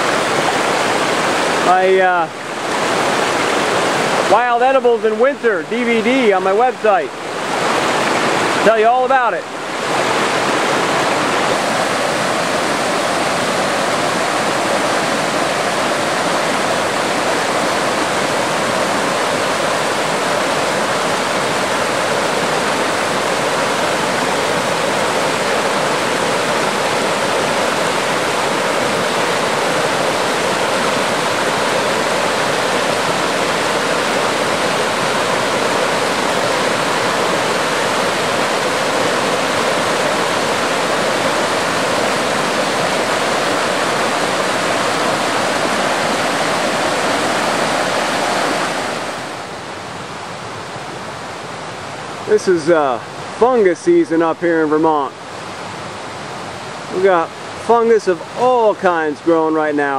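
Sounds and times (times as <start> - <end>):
rushing stream: 0.0 - 59.9.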